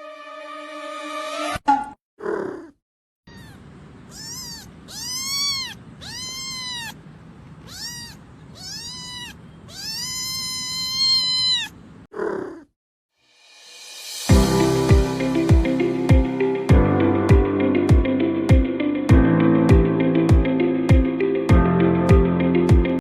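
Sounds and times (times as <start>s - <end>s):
cat meowing: 3.3s - 12.6s.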